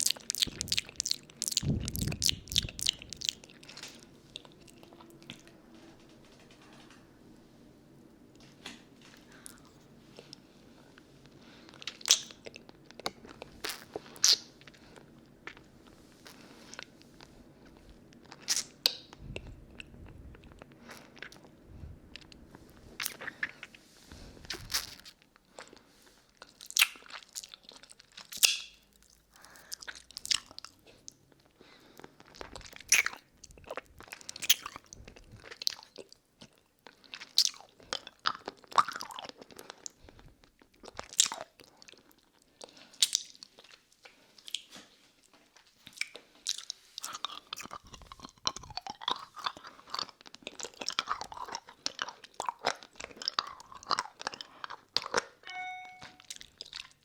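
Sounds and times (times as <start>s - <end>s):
mouth clicks and pops: 0.0s - 3.4s
wet sucking on a lollipop: 0.0s - 3.6s, 24.4s - 25.2s.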